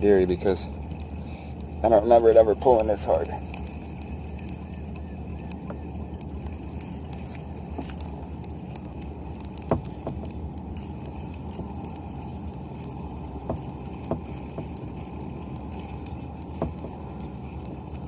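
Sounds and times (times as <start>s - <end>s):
gear clicks and knocks: 0.0s - 18.0s
wind and water rumble: 0.0s - 18.0s.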